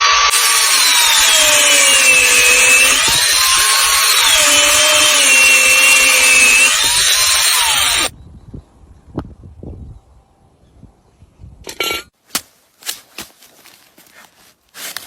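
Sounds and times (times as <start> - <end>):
power tool whining with hiss: 0.0 - 8.1.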